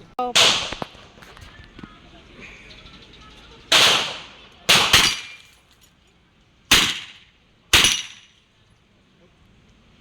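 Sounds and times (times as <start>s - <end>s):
pistol shots with echo: 0.4s - 0.8s, 3.7s - 5.4s, 6.7s - 8.3s.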